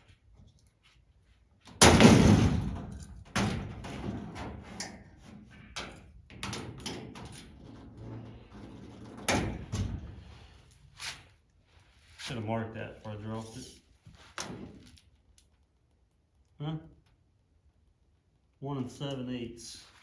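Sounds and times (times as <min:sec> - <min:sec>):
loud bang: 0:01.8 - 0:02.8.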